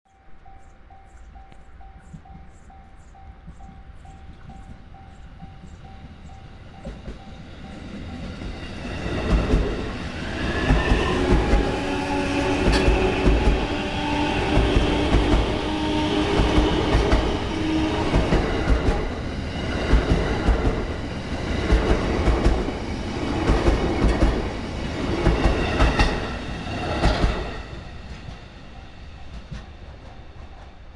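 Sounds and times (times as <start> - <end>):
level crossing warning bell: 0.1 - 8.6
train wheels clacking over joints: 10.6 - 13.7, 25.1 - 27.5.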